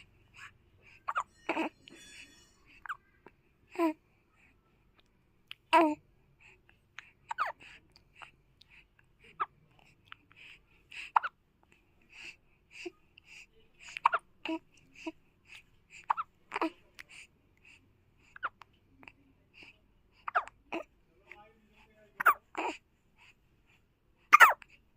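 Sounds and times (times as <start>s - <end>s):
small child hiccupping: 24.3s - 24.6s.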